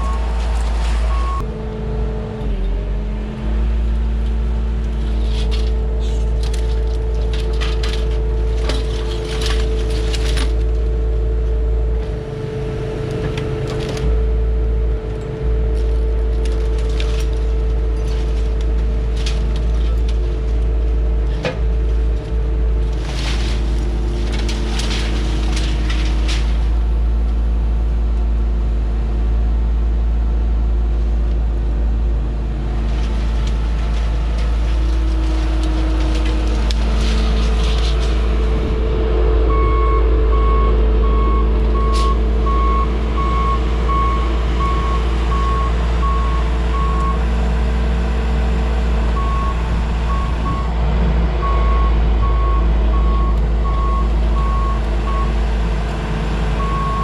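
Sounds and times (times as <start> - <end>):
loader engine running: 0.0 - 57.0
sharp cracking and crunching: 22.1 - 27.0.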